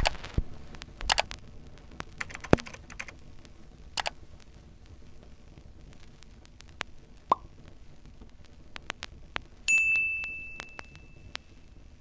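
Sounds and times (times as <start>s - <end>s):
sharp handling clicks and taps: 1.1s - 1.3s.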